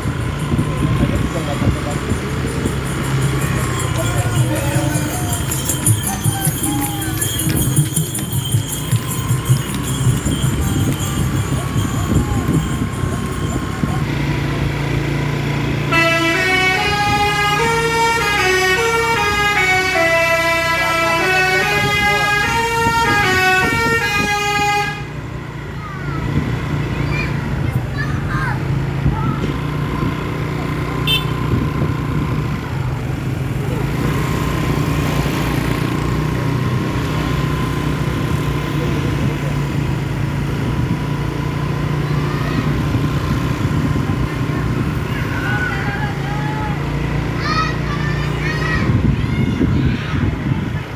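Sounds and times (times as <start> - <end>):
bus engine running: 0.0 - 50.9
musical air horn tune: 15.9 - 25.1.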